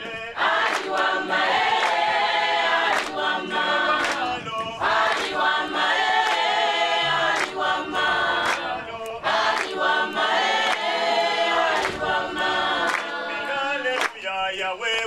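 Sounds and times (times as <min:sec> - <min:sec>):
choir singing a cappella: 0:00.0 - 0:15.0.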